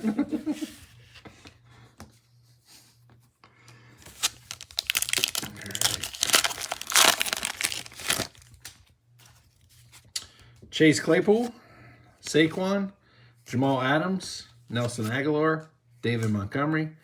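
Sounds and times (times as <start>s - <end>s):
foil wrapper crinkling and tearing: 4.0s - 8.8s.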